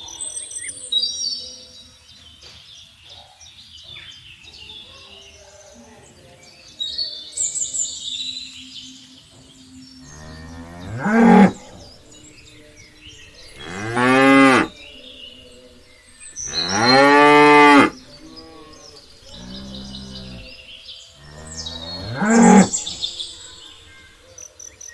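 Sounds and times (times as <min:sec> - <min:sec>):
birds chirping faintly: 0:08.8 - 0:24.9
cows mooing: 0:10.1 - 0:12.6, 0:13.3 - 0:14.8, 0:16.2 - 0:20.6, 0:21.2 - 0:23.2.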